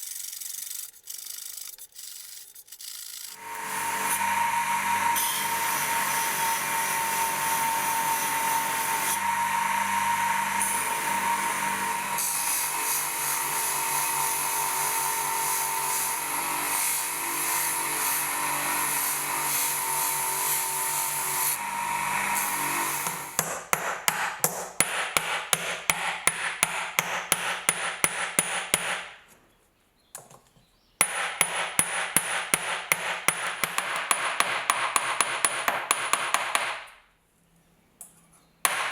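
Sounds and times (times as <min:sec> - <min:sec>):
electric power tool whining: 0:03.3 - 0:23.4.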